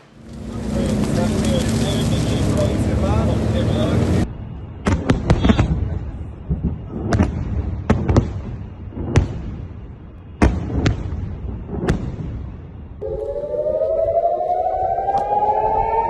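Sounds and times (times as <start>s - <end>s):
low rumble: 11.1s - 16.0s.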